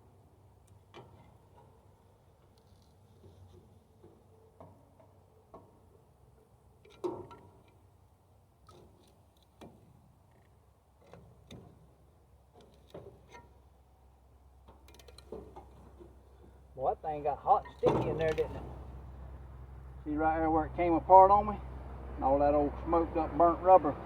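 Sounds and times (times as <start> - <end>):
clicks and knocks on belt and pulley: 14.6 - 16.6.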